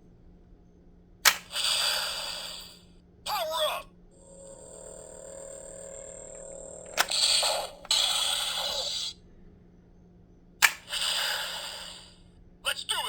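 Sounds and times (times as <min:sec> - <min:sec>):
toy click: 0:01.3 - 0:02.7, 0:06.9 - 0:09.2, 0:10.6 - 0:11.9
hissing bursts of energy noise: 0:01.5 - 0:02.8
steady electronic tone: 0:04.1 - 0:09.1.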